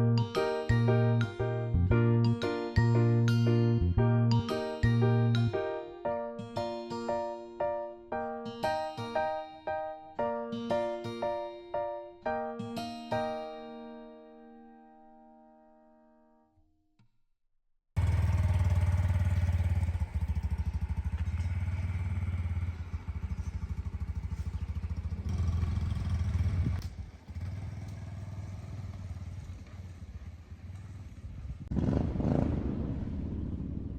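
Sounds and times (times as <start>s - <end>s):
motorcycle engine pulsing: 18.0s - 32.7s.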